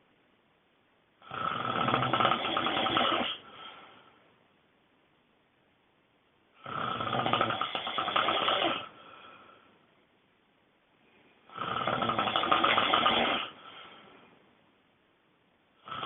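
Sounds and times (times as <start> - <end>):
person snoring loudly: 1.2 - 3.6, 6.6 - 9.0, 11.5 - 13.6, 15.8 - 16.0.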